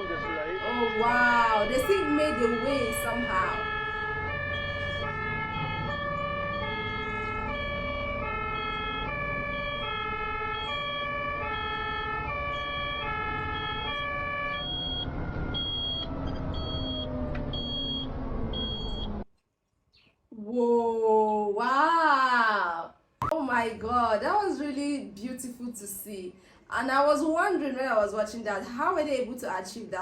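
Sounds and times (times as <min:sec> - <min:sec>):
road traffic rumble: 0:00.0 - 0:19.2
two-tone siren: 0:00.0 - 0:19.3.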